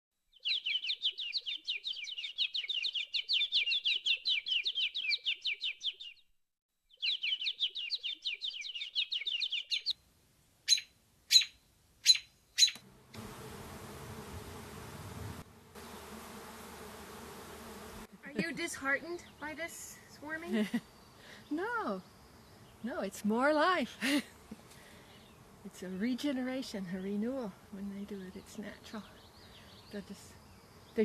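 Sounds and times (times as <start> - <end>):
bird chirping sharply: 0.4 - 6.2, 6.9 - 9.9, 10.7 - 12.8
songbird trilling: 0.4 - 6.2, 6.9 - 9.9, 10.7 - 12.8
bee swarm buzzing: 12.8 - 31.0.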